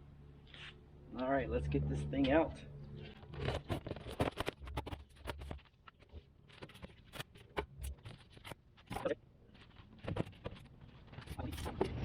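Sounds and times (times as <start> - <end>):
packing material rustling: 3.0 - 12.0.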